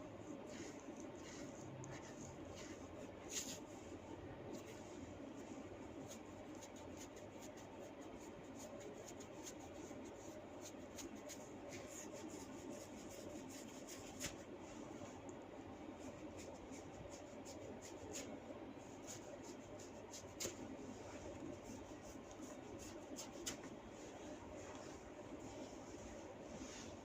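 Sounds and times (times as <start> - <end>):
hair rustling and crackling: 6.1 - 15.4, 19.0 - 27.0.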